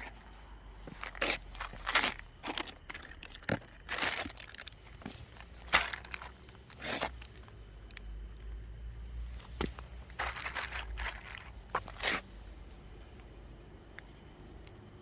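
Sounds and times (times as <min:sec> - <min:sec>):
plastic litter crinkling: 0:10.1 - 0:12.1.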